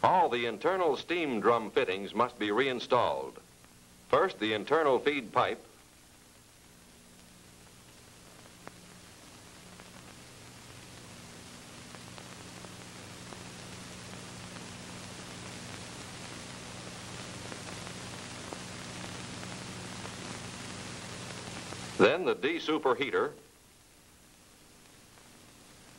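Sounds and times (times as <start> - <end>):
low electrical hum: 0.0 - 25.9
soundtrack hiss: 0.0 - 25.9.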